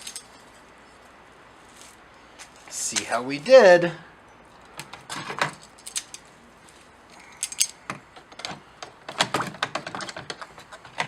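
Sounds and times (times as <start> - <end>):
metal clinking against container: 0.0 - 0.6.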